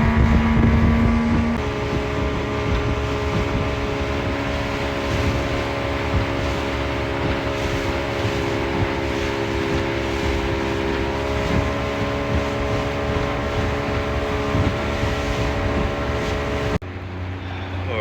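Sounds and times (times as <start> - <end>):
outboard motor running: 0.0 - 18.0
wind and water rushing: 0.0 - 18.0.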